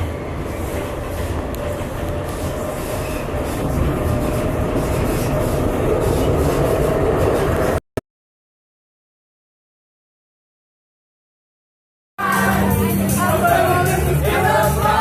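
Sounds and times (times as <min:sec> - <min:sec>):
airplane cabin noise: 0:00.0 - 0:07.8.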